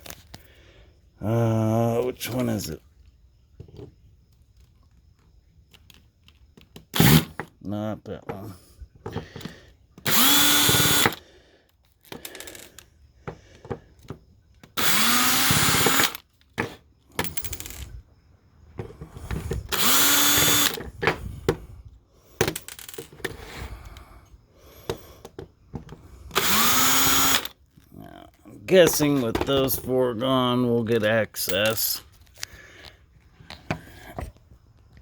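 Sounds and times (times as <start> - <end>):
power drill motor spinning: 7.0 - 7.4, 9.1 - 11.3, 12.0 - 12.9, 13.5 - 16.3, 19.0 - 21.7, 23.6 - 27.8
metal parts clicking and knocking: 11.8 - 12.9, 13.6 - 18.0, 22.3 - 23.4, 28.8 - 30.0, 30.9 - 32.9.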